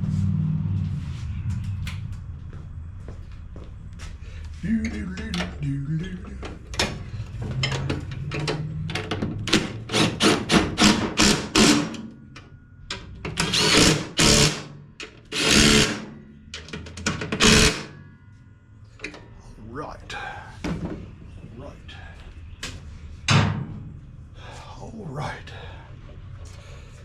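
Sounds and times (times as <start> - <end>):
impact driver hammering: 9.5 - 12.1, 13.4 - 16.2, 17.2 - 17.9.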